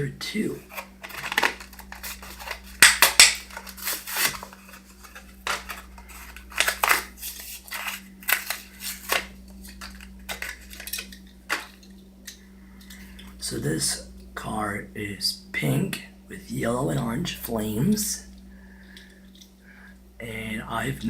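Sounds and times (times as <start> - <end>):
plastic and cardboard crackling: 0.6 - 12.0.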